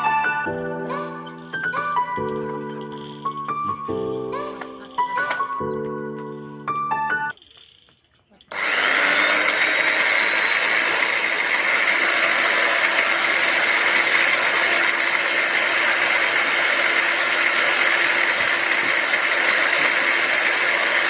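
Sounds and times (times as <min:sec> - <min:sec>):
rotary hammer drill running: 0:08.4 - 0:21.0.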